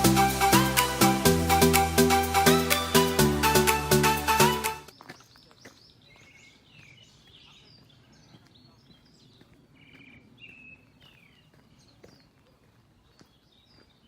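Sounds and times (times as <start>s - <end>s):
faint birdsong: 4.8s - 14.0s.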